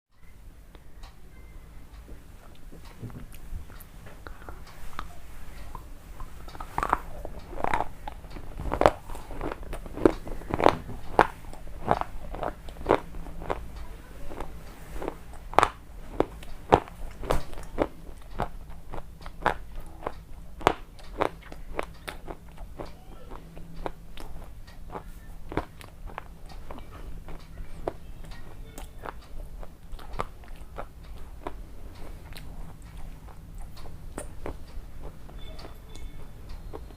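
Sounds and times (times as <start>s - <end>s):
chips crunching while chewed: 6.5s - 35.8s.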